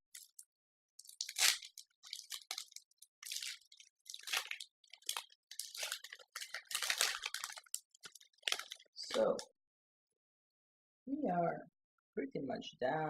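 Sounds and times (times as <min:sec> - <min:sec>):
crinkling wrapper: 0:00.0 - 0:00.4, 0:01.0 - 0:09.4
rustling of trading cards: 0:01.0 - 0:09.2.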